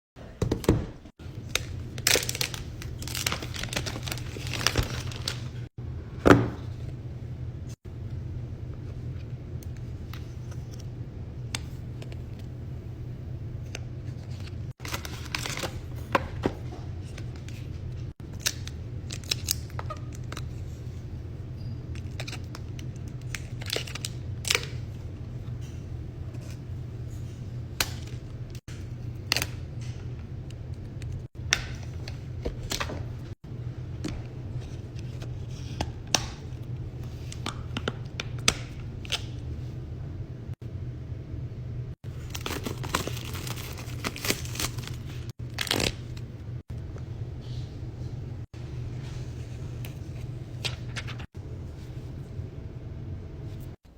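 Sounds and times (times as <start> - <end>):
steady low hum: 0.2 - 53.9
packaging crinkling and tearing: 1.4 - 5.7, 14.8 - 15.9, 22.0 - 24.8, 42.0 - 46.3.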